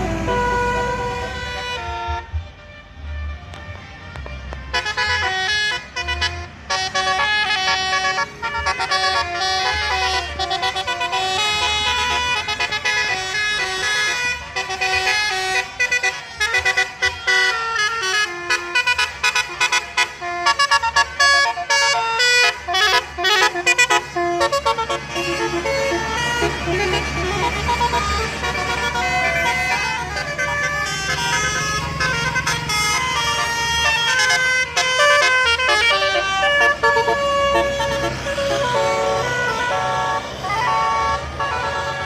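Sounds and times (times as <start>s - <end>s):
musical vehicle horn tune: 0.0s - 42.0s.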